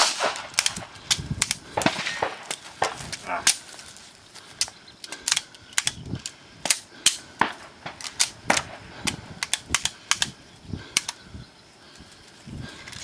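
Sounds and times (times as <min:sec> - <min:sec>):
rapid gunshots: 0:00.0 - 0:00.9.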